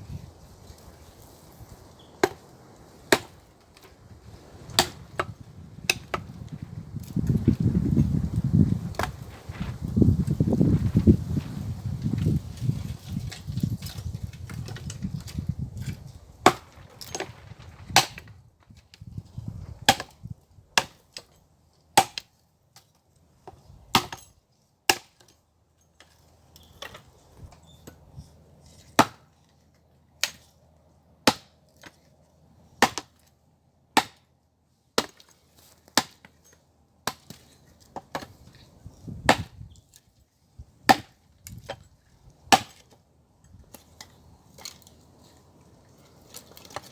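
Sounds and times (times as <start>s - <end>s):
blade chopping wood: 2.2s - 2.4s, 3.1s - 3.9s, 4.7s - 6.4s, 8.9s - 9.2s, 13.8s - 18.4s, 19.8s - 20.2s, 22.0s - 22.3s, 23.9s - 24.2s, 29.0s - 29.3s, 31.2s - 31.9s, 32.8s - 33.2s, 34.0s - 34.3s, 35.0s - 36.4s, 37.0s - 38.4s, 39.2s - 39.6s, 40.9s - 41.8s, 42.5s - 43.0s.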